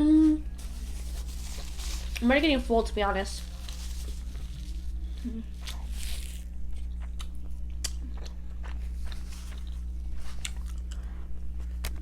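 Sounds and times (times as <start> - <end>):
steady low hum: 0.0 - 12.0
person chewing food: 3.6 - 12.0.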